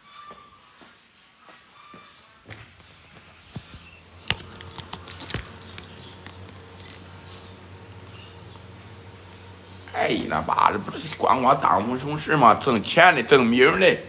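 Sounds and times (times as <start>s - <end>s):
low steady hum: 2.6s - 14.0s
clicks and knocks: 2.8s - 7.1s.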